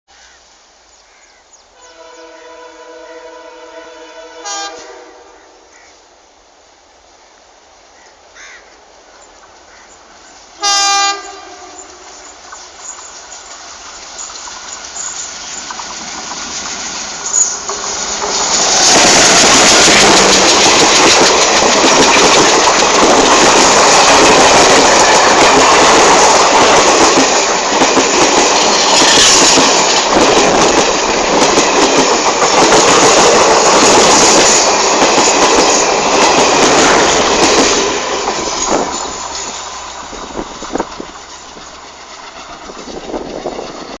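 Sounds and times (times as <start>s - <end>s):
locomotive horn blast: 1.8s - 5.7s, 10.6s - 12.1s
train wheels clattering: 11.2s - 44.0s.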